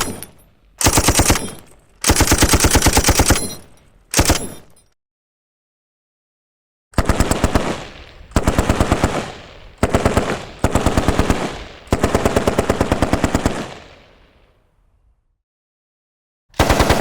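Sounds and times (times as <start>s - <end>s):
automatic gunfire bursts: 0.0s - 4.6s, 16.6s - 17.0s.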